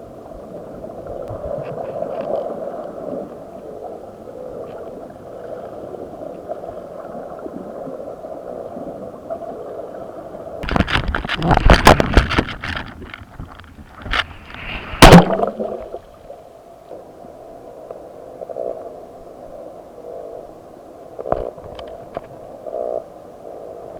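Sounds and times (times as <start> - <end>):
rapid knocks and clatters: 10.6 - 14.6
muffled underwater noise: 10.6 - 15.8.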